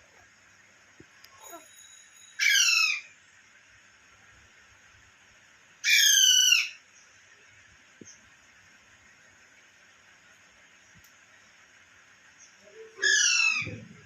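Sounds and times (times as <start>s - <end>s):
parrot squawking: 2.4s - 3.1s, 5.8s - 6.8s, 13.0s - 13.8s.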